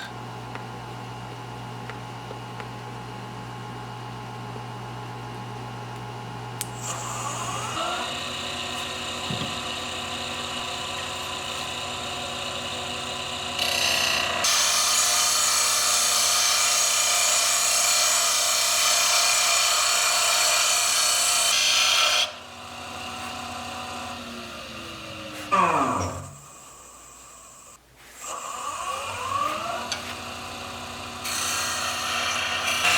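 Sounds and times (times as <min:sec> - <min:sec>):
wood lathe motor hum: 0:06.7 - 0:27.7, 0:28.3 - 0:32.9.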